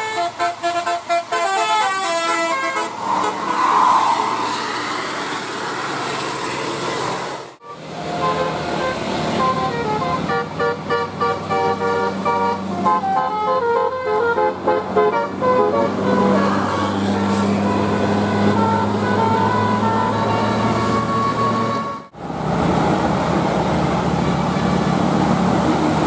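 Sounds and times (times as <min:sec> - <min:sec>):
musical multi-tone bus horn: 0:00.0 - 0:03.5, 0:07.6 - 0:22.2, 0:24.2 - 0:25.2
bus engine running: 0:00.0 - 0:03.6, 0:04.3 - 0:26.0.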